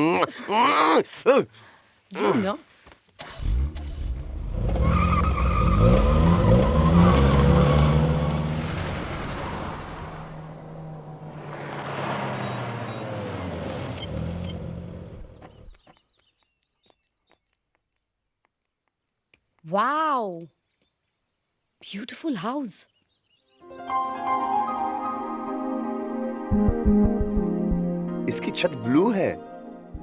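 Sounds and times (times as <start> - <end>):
car engine revving: 3.2 - 15.7.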